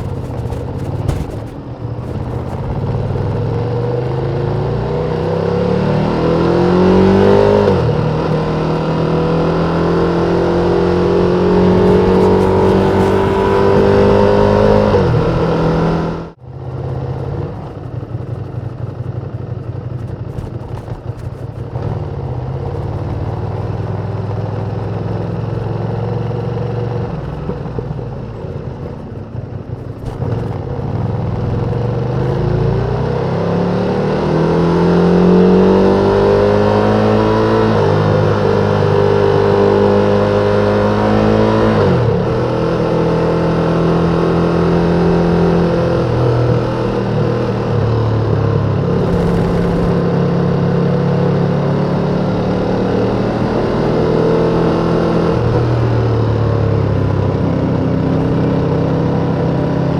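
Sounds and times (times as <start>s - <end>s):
motorcycle engine accelerating: 0.0s - 59.9s.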